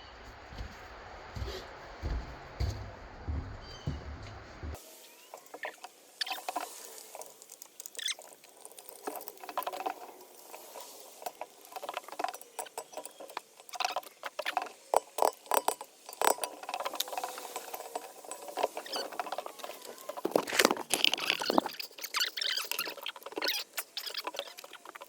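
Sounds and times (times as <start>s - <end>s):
clicks and clinks of small parts: 5.4s - 25.0s.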